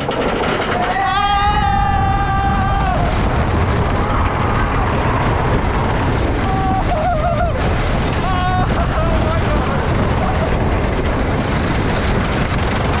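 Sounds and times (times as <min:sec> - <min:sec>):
roller coaster wind and rumble: 0:00.0 - 0:13.0
riders yelling: 0:00.7 - 0:03.3, 0:06.4 - 0:10.6.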